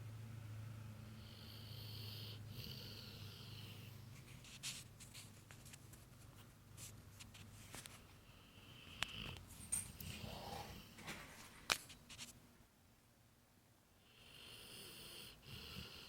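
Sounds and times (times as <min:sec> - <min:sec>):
dog breathing in sleep: 0:01.1 - 0:04.1, 0:10.0 - 0:11.0, 0:14.1 - 0:16.0.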